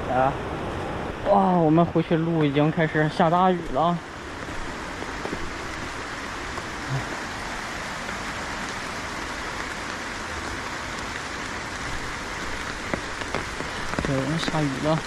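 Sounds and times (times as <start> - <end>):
heavy rain falling: 0.0 - 15.0.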